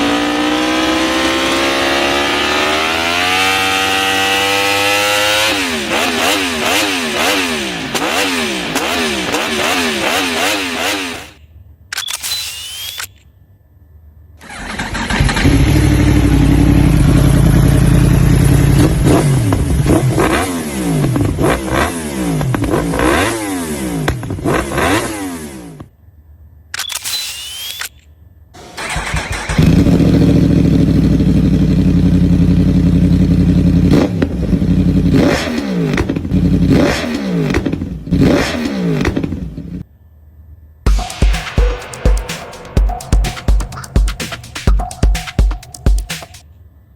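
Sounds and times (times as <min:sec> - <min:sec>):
motorcycle engine idling and revving: 0:00.0 - 0:11.4, 0:14.4 - 0:25.9, 0:28.6 - 0:39.8.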